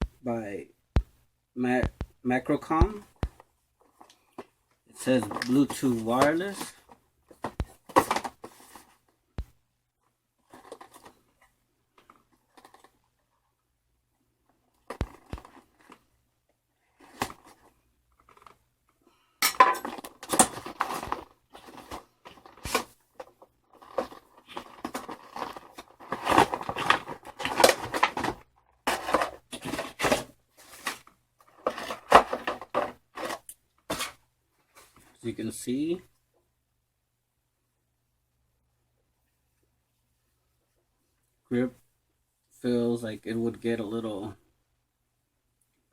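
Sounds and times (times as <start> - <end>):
packaging rustling and crinkling: 10.4 - 11.4, 14.8 - 16.0, 19.8 - 34.2.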